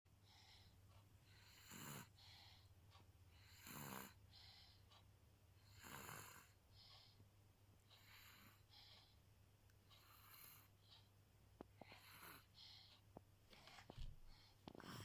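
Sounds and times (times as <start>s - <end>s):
child snoring: 1.3s - 2.2s, 3.4s - 4.2s, 5.6s - 6.6s, 8.0s - 8.7s, 10.0s - 10.7s, 11.8s - 12.5s, 14.8s - 15.0s.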